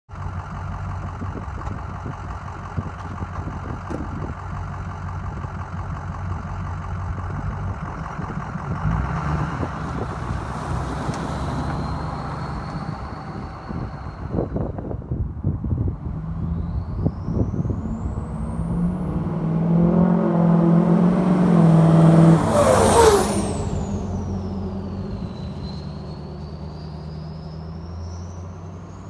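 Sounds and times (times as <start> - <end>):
diesel engine running: 0.1 - 29.0
faint high turbo whistle: 11.4 - 14.9, 16.4 - 29.0.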